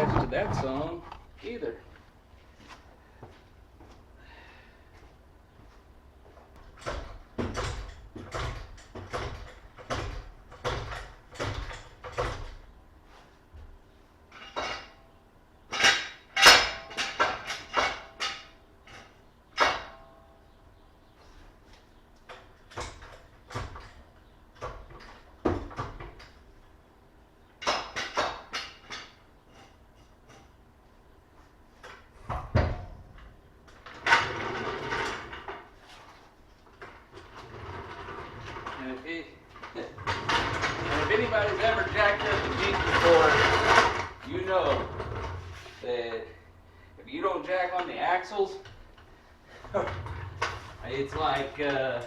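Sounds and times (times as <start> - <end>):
metal knocks and clanks: 0.0 - 1.3, 6.7 - 12.6, 15.7 - 20.2, 39.5 - 45.8
irregular metal clattering: 14.3 - 15.1.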